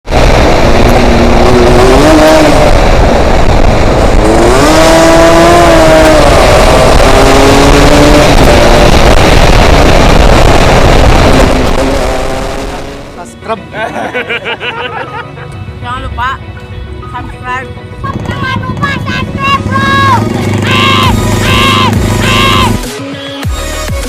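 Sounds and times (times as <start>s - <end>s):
wind noise on microphone: 0.1s - 13.1s
motorcycle engine revving: 0.1s - 13.2s, 17.8s - 22.8s.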